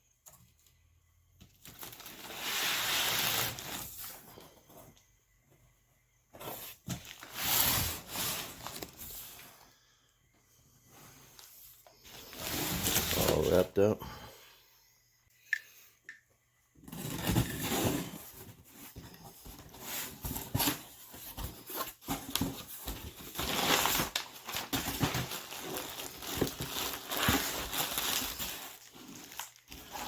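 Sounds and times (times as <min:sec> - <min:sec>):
packaging rustling and crinkling: 0:01.5 - 0:04.4, 0:06.4 - 0:09.6, 0:11.4 - 0:13.8, 0:16.9 - 0:30.0.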